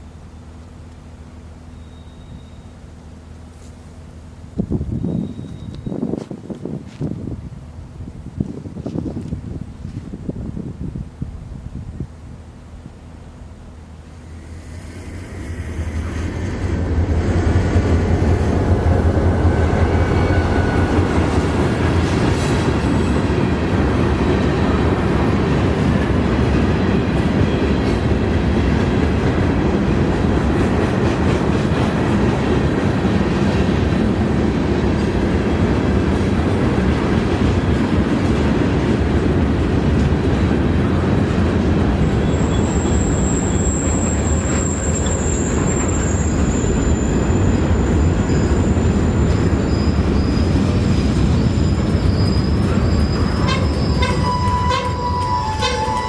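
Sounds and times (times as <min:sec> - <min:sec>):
locomotive diesel drone: 0:12.2 - 0:24.1
train wheels clattering on rails: 0:15.7 - 0:56.0.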